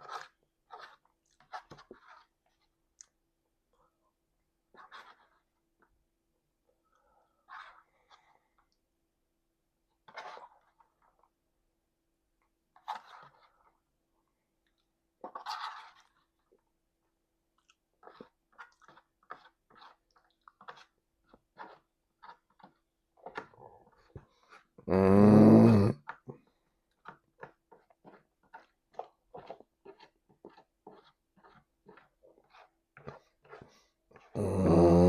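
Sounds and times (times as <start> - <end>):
loud deep burp: 24.9 - 26.0.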